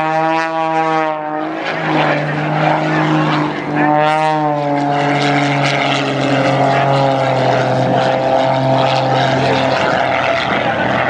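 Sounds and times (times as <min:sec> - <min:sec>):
propeller aircraft engine running: 0:00.0 - 0:11.0.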